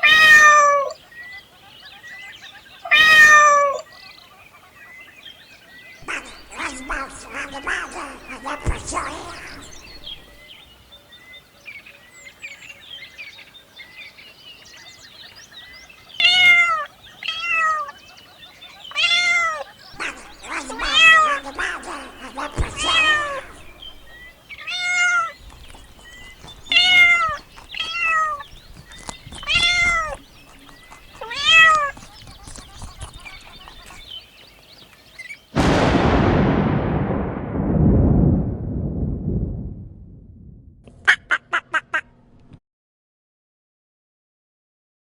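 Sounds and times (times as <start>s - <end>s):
cat meowing: 0.0s - 1.0s, 2.9s - 3.8s, 16.2s - 17.9s, 18.9s - 34.0s.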